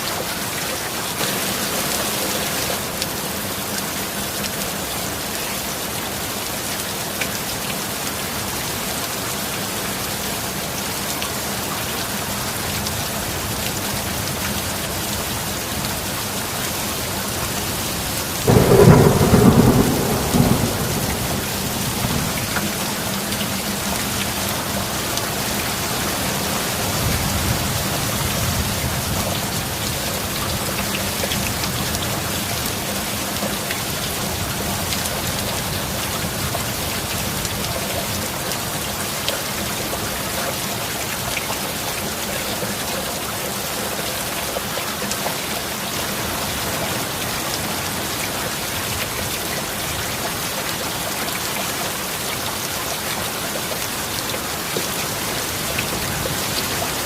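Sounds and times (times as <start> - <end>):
heavy rain: 0.0 - 57.0
thunder clap and rumble: 18.4 - 24.8.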